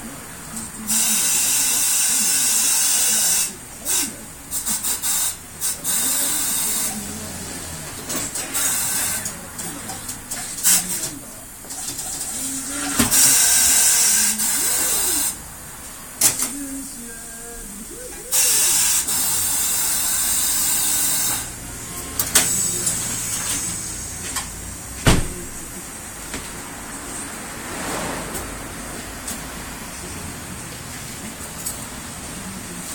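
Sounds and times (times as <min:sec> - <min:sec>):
compressed air hissing: 0:00.8 - 0:07.6, 0:08.3 - 0:09.4, 0:12.2 - 0:15.4, 0:18.2 - 0:21.6.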